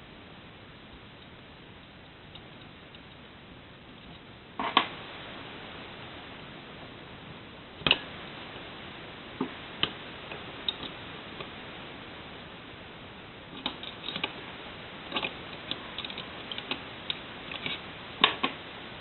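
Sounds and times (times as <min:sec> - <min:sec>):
low steady hiss: 0:00.0 - 0:19.0
metal parts clicking and knocking: 0:15.1 - 0:18.5.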